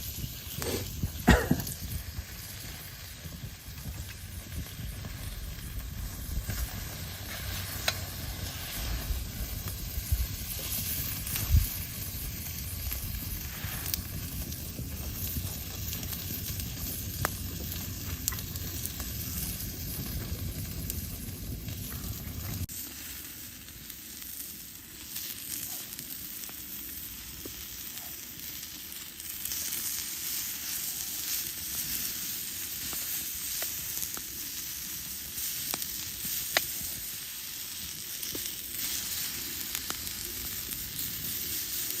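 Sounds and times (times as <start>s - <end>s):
log fire hissing and crackling: 0.0s - 42.0s
low rumble: 8.4s - 22.7s.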